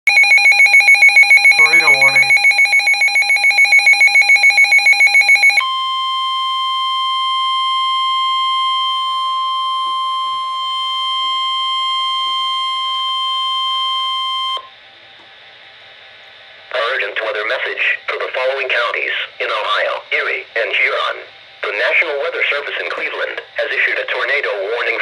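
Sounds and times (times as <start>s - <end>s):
rapid pulsing alarm beeps: 0.1s - 9.1s
steady single alarm tone: 0.1s - 14.7s
faint radio hiss: 1.6s - 2.4s, 14.9s - 25.0s.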